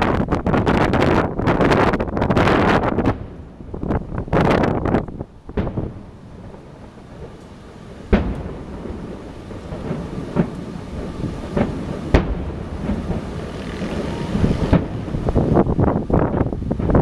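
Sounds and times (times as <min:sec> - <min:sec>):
fireworks bangs: 0:00.0 - 0:17.0
wind buffeting microphone: 0:00.0 - 0:17.0
faint firework pops: 0:05.5 - 0:07.5, 0:08.1 - 0:10.6, 0:11.5 - 0:13.2.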